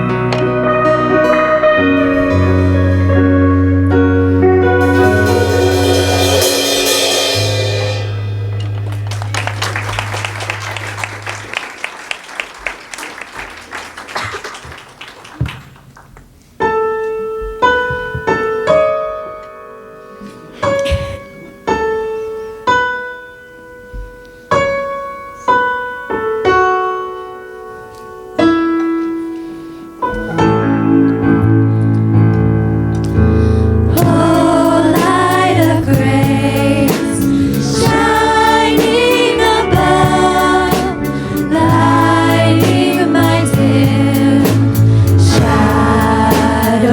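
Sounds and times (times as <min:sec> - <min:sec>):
piano chords: 0:00.0 - 0:14.0, 0:16.6 - 0:46.9
worship band music: 0:00.0 - 0:16.4, 0:28.6 - 0:46.9
ticking cymbal: 0:04.8 - 0:08.8
voices singing: 0:33.9 - 0:46.9.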